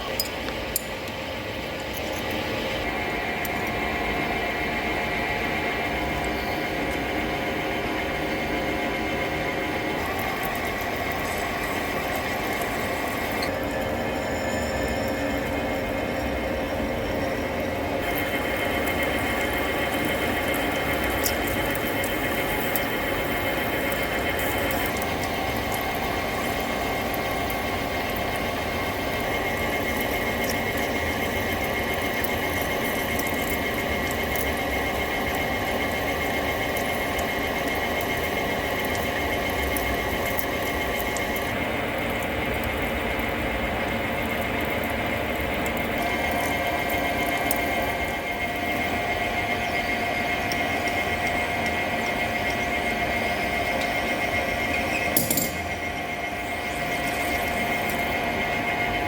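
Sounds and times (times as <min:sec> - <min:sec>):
drill squealing in steel: 0:14.1 - 0:15.4.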